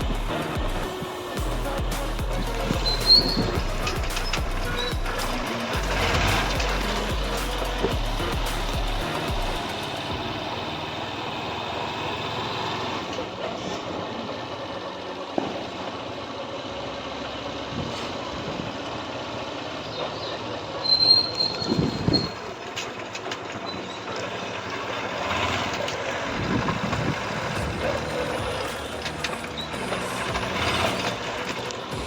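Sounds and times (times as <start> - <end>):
traffic rumble: 0.0 - 32.0
brief high squeal: 2.7 - 5.4, 20.8 - 22.4.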